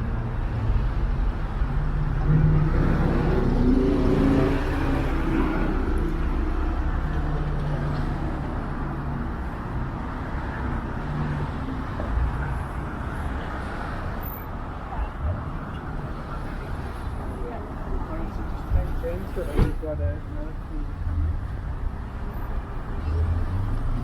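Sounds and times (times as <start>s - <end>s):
rumble of passing traffic: 0.0s - 24.0s
vehicle engine passing close: 1.8s - 8.6s.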